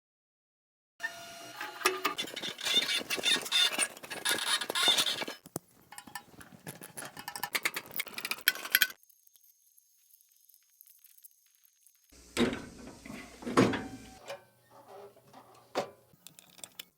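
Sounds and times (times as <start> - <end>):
machine metallic rattling: 2.1 - 8.9.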